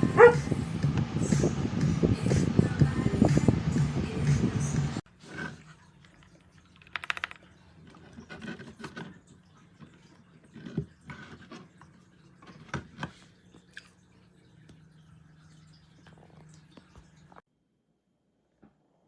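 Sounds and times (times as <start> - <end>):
typing on mechanical keyboard: 6.6 - 7.5.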